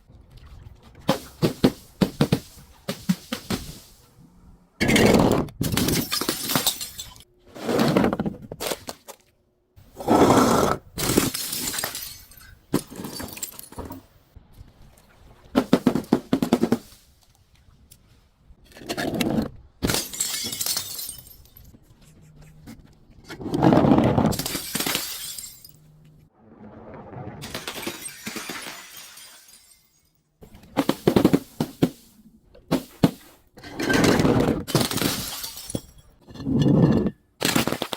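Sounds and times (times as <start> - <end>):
glass crushing and breaking: 5.7 - 7.3, 11.0 - 14.0, 19.8 - 21.8, 24.3 - 26.0, 27.4 - 31.4, 33.8 - 37.9.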